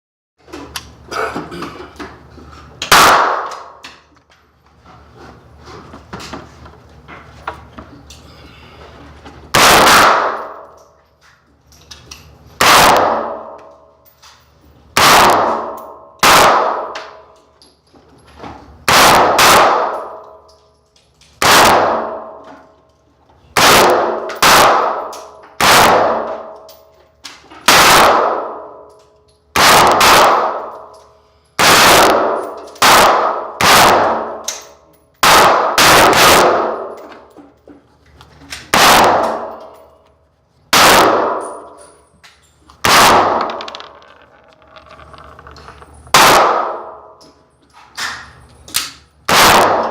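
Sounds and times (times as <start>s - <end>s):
rifle shots: 2.9s - 3.8s, 9.5s - 10.6s, 12.6s - 13.6s, 15.0s - 17.1s, 18.8s - 20.2s, 21.4s - 22.4s, 23.6s - 26.5s, 27.6s - 28.8s, 29.6s - 30.9s, 31.6s - 34.6s, 35.2s - 36.9s, 38.7s - 39.6s, 40.7s - 41.7s, 42.8s - 44.0s, 46.1s - 47.1s, 49.3s - 49.9s.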